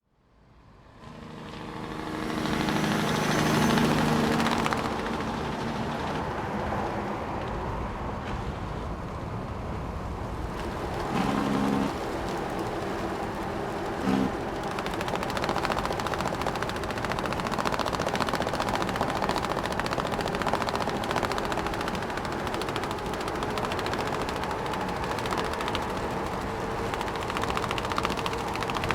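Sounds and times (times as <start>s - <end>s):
road noise: 0.1s - 28.9s
truck engine hum: 1.0s - 28.9s
straps rattling and flapping: 10.5s - 28.9s
short low horn blasts: 11.0s - 12.1s, 14.0s - 14.6s.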